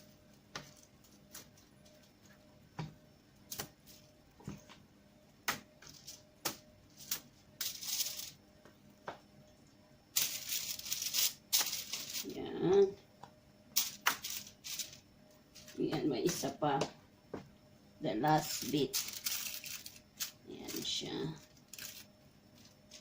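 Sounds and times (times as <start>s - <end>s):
rustling: 10.2s - 12.4s, 13.8s - 15.8s, 18.3s - 23.0s.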